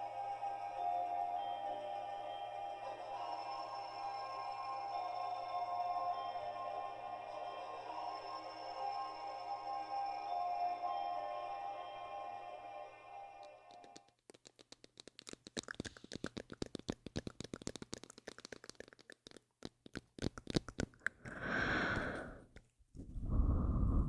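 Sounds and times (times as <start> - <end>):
crackling clicks: 13.4 - 21.4.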